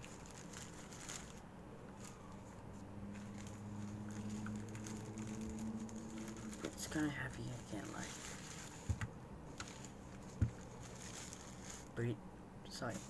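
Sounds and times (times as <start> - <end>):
packaging rustling: 0.0 - 2.5, 3.2 - 12.0.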